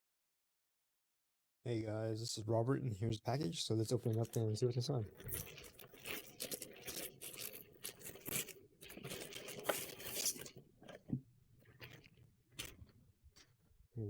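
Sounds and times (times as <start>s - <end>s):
packaging crinkles and clicks: 5.2s - 11.1s
package tearing and rustling: 5.4s - 10.6s.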